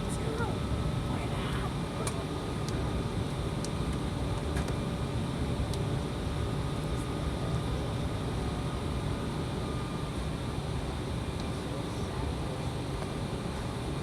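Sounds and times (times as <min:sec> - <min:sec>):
jet cabin low rumble: 0:00.0 - 0:14.0.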